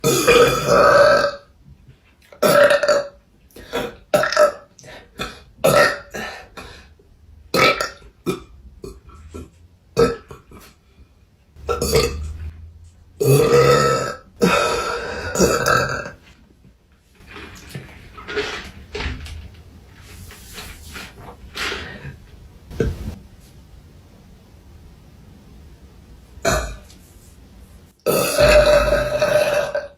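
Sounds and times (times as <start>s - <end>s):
woman burping: 0.0s - 1.4s, 2.3s - 6.6s, 11.6s - 12.4s, 13.2s - 16.2s, 26.4s - 26.8s, 28.0s - 29.9s.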